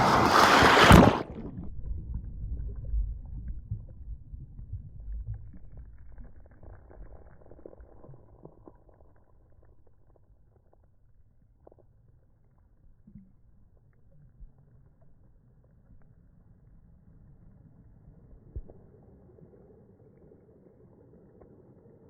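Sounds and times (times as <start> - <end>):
surf: 0.0 - 1.7
faint gurgling and crackles: 0.2 - 22.0
muffled underwater rumble: 0.8 - 22.0.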